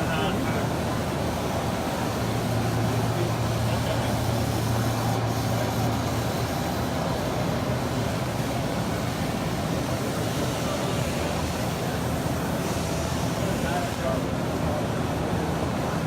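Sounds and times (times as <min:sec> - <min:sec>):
exhibition hall din: 0:00.0 - 0:16.0.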